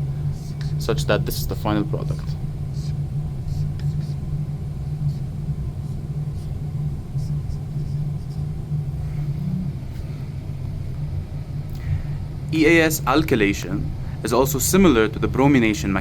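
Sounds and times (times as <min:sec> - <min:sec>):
low rumble: 0:02.1 - 0:13.1.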